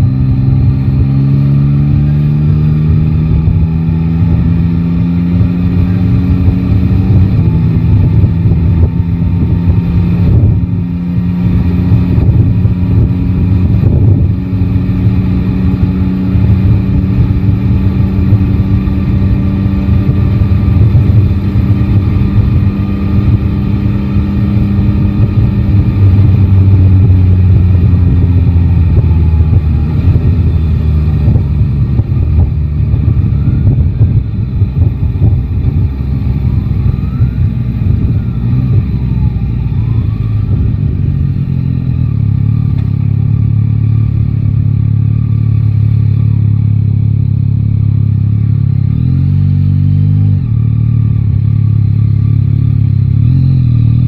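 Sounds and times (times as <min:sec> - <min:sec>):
motorcycle engine running: 0:00.0 - 0:54.0
wind buffeting microphone: 0:05.4 - 0:41.8.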